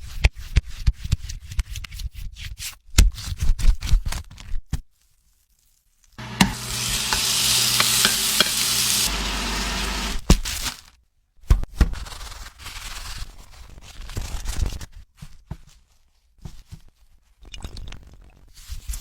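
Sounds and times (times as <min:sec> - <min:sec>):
kitchen taps and clicks: 0:06.2 - 0:10.2
food sizzling in oil: 0:06.2 - 0:10.8.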